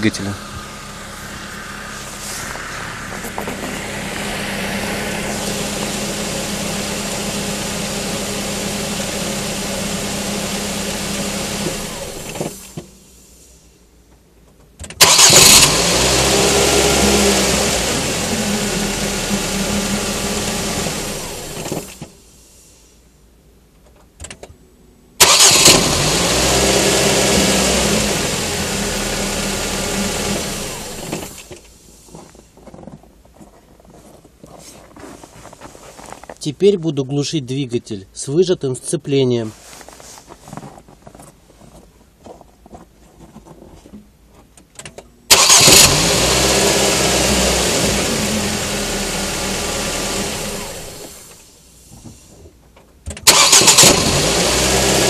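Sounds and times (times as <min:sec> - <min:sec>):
car engine idling: 0:00.0 - 0:13.1, 0:15.0 - 0:21.9, 0:25.2 - 0:31.5, 0:45.3 - 0:51.6, 0:53.2 - 0:55.0
engine starting with loud burst: 0:00.0 - 0:13.5, 0:15.0 - 0:22.2, 0:25.2 - 0:31.7, 0:45.3 - 0:51.5, 0:53.2 - 0:55.0.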